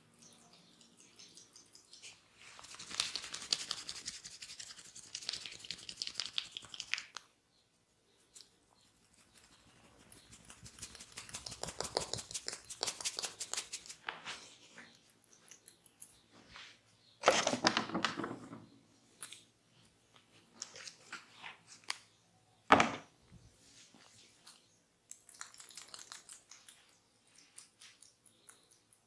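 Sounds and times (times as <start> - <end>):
hands rubbing oiled skin: 1.8 - 7.2, 8.3 - 15.0, 24.0 - 28.6.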